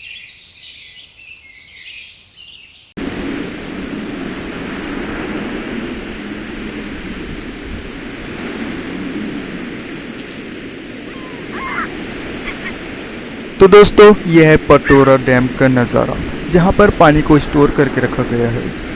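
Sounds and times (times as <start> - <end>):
birds chirping: 0.0 - 3.0, 10.9 - 18.9
steady rushing noise: 3.0 - 18.9
insects chirping: 11.1 - 18.9.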